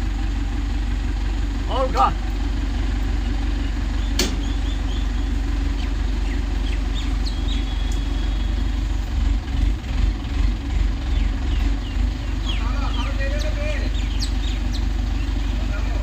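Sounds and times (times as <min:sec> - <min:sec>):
engine idling: 0:00.0 - 0:16.0
faint bird chirps: 0:03.6 - 0:08.8, 0:11.0 - 0:15.7.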